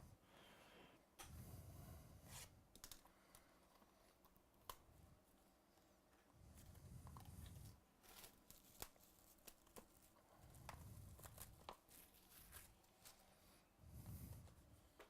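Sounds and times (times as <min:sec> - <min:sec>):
packaging tearing and crinkling: 0:08.0 - 0:10.2.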